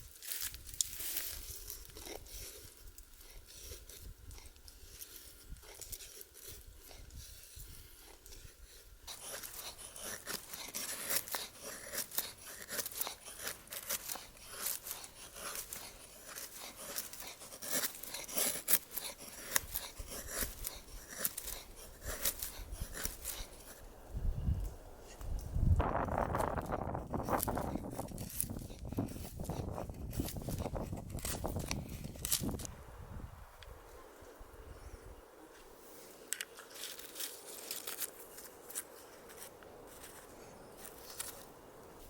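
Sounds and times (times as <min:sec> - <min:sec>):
crisp crunching and crackling: 0:00.0 - 0:07.1, 0:09.1 - 0:23.8, 0:26.0 - 0:32.7, 0:36.4 - 0:40.2.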